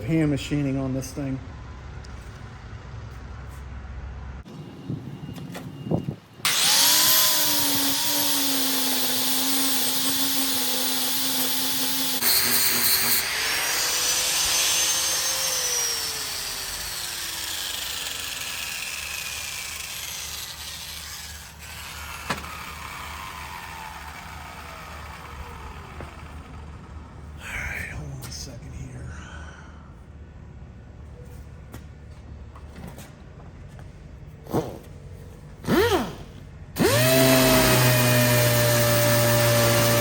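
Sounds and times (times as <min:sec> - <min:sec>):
motor winding down whine: 0:06.4 - 0:10.6, 0:11.7 - 0:27.3, 0:35.7 - 0:40.0
electric grinder grinding metal: 0:06.5 - 0:26.7, 0:36.8 - 0:40.0.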